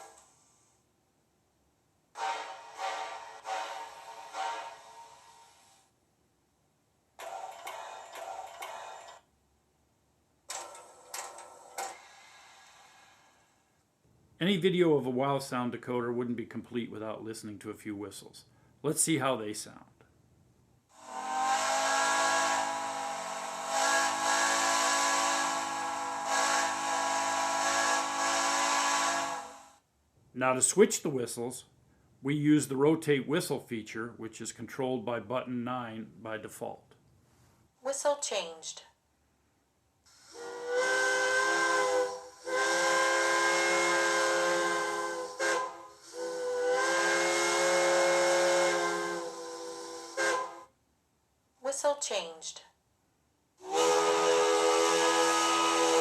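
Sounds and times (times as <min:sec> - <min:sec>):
steam locomotive whistle: 0:02.2 - 0:05.8, 0:20.9 - 0:29.8, 0:40.1 - 0:50.7, 0:53.6 - 0:56.0
steam hiss: 0:02.2 - 0:06.0, 0:10.5 - 0:13.8, 0:20.9 - 0:29.8, 0:40.1 - 0:50.7, 0:53.6 - 0:56.0.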